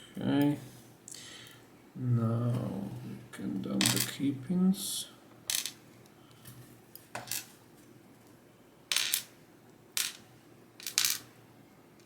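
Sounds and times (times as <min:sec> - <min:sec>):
metal pins clinking on hard surface: 0:05.5 - 0:05.8, 0:08.9 - 0:09.3, 0:10.0 - 0:10.2, 0:10.8 - 0:11.3.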